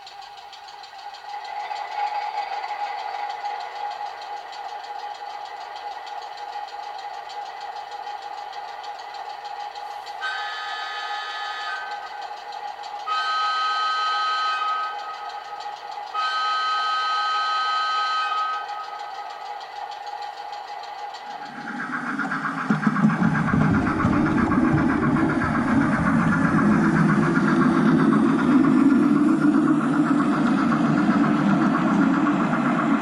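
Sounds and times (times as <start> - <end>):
model train diesel engine sound: 0.0 - 33.0
two-tone horn blasts: 10.2 - 12.0, 13.1 - 15.3, 16.1 - 19.0.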